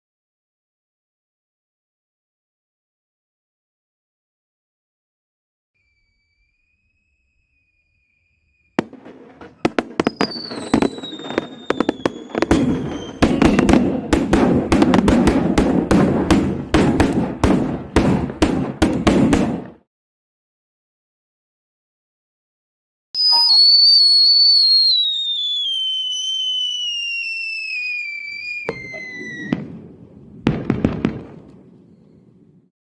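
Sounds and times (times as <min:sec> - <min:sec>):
whistling firework: 0:05.8 - 0:19.7, 0:23.2 - 0:32.7
fireworks crackling and banging: 0:08.8 - 0:19.8, 0:23.2 - 0:32.6
sharp pops: 0:08.8 - 0:19.8.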